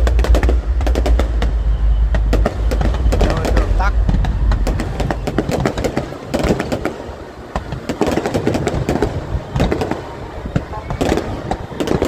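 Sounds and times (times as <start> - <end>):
low rumble: 0.0 - 6.4
crowd voices: 0.0 - 12.0
fireworks popping and crackling: 0.0 - 12.0.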